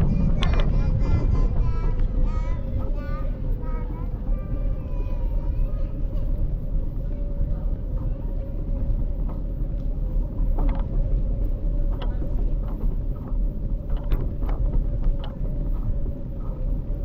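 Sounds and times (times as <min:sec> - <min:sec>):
constant whine: 0:00.0 - 0:17.0
faint voices: 0:00.0 - 0:17.0
low rumble: 0:00.0 - 0:17.0
light clicks and ticks: 0:09.2 - 0:16.8.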